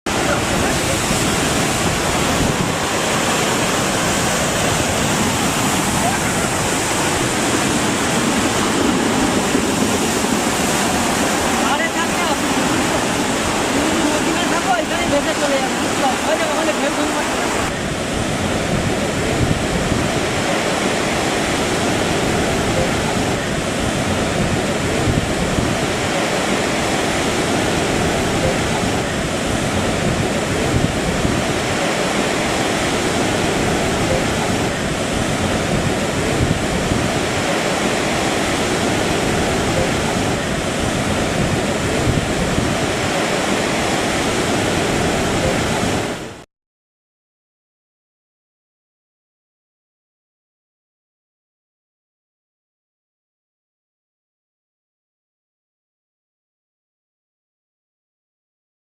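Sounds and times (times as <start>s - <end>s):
rushing churning water: 0.1s - 46.4s.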